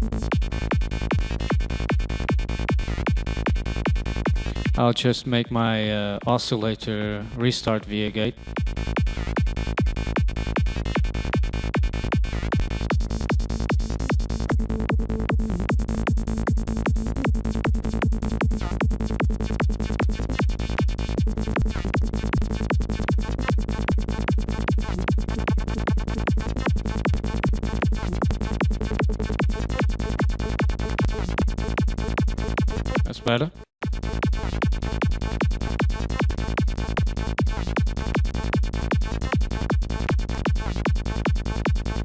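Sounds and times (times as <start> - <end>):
kick drum: 0.0 - 4.8, 8.6 - 33.1, 33.8 - 41.8
rolling bass pulse: 0.0 - 42.0
percussive synth lead: 12.2 - 31.9.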